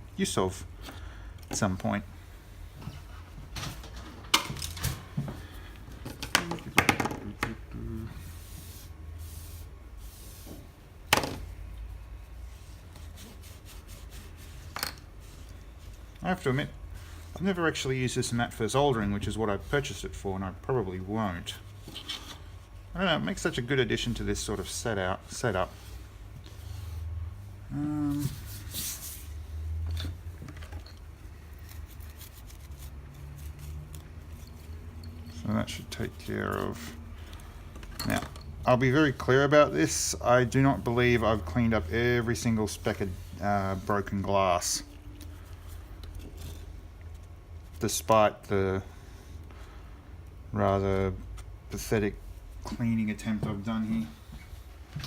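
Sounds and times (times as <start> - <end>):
steady low hum: 0.0 - 55.0
man humming: 27.6 - 28.5
soft rustle: 30.9 - 37.4.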